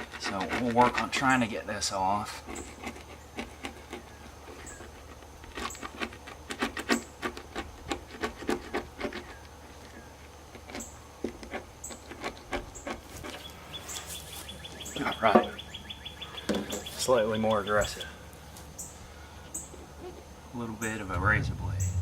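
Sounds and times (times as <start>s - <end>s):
plastic scraper scraping sealant: 0.0s - 1.5s, 2.2s - 14.1s.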